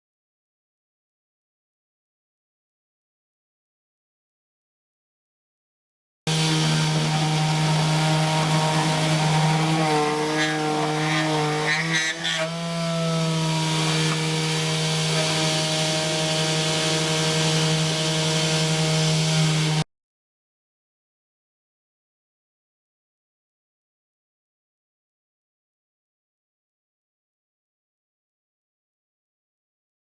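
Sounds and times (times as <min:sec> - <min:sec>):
milling machine cutting: 0:06.3 - 0:19.8.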